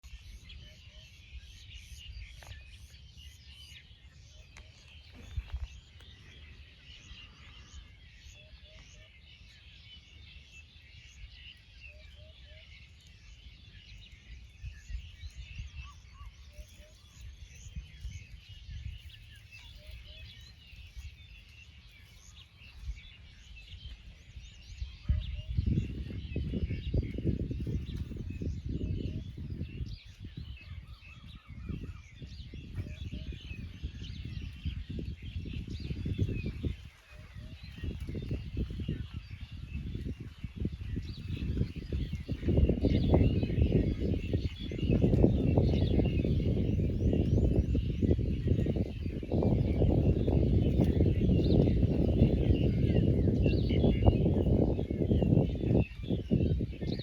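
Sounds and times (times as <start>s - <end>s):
small birds chirping: 0.0s - 57.0s
wind rumbling on microphone: 0.0s - 57.0s.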